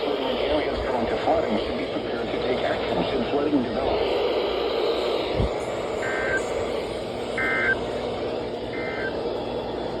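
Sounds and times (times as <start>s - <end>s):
radio hiss: 0.0s - 9.2s
buzzy digital data tone bursts: 4.8s - 9.2s.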